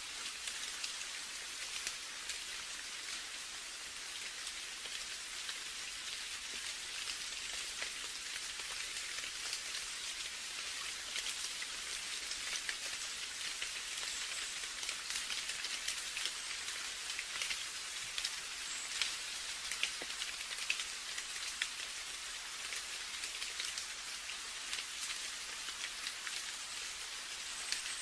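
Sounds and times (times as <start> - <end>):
steady rain hiss: 0.0 - 28.0
raindrops ticking: 6.4 - 28.0.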